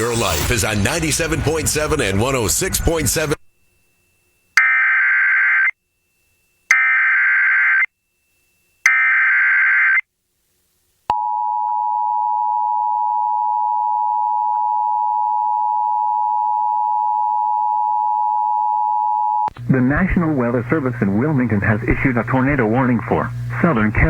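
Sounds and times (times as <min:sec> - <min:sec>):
buzzing data screech: 0:00.0 - 0:03.4.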